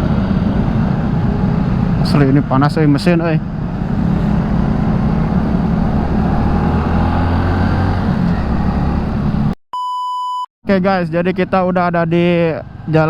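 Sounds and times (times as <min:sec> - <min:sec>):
road and wind noise: 0:00.0 - 0:09.6, 0:10.8 - 0:13.0
steady beep tone: 0:09.8 - 0:10.5.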